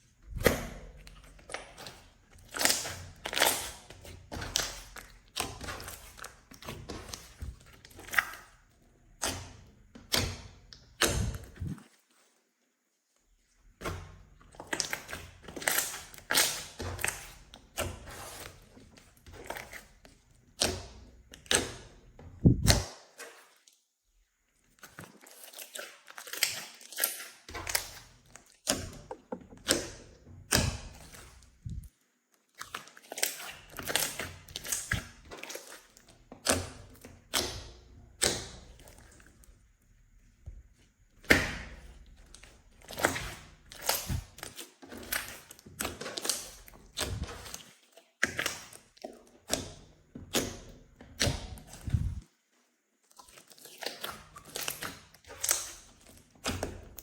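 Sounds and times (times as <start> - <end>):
slime squeezed by hand: 11.0 - 11.9, 42.9 - 45.4.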